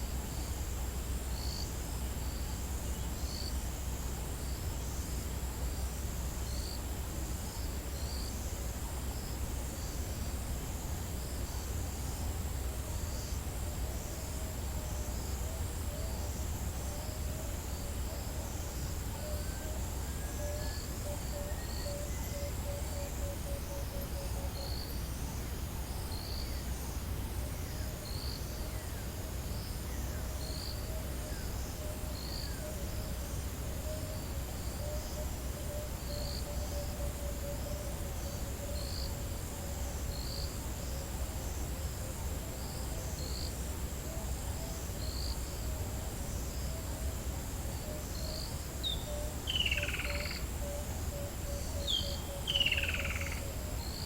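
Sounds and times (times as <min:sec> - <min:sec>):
high insect trill: 0:47.7 - 0:54.0.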